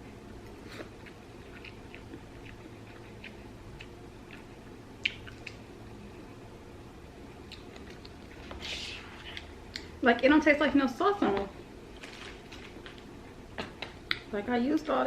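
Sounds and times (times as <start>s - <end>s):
wet mouth chewing clicks: 1.0s - 5.6s.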